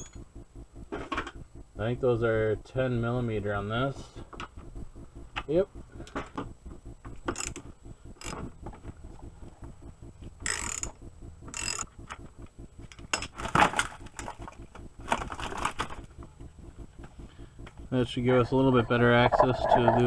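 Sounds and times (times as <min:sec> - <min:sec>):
ratchet wrench clicking: 0:07.3 - 0:08.4, 0:10.4 - 0:12.0.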